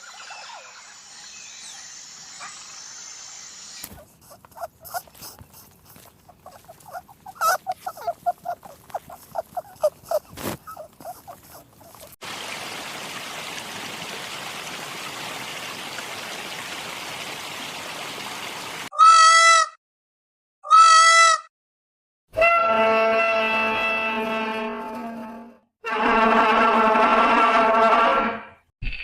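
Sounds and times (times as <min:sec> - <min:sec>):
repeated animal calls: 0:04.3 - 0:12.2.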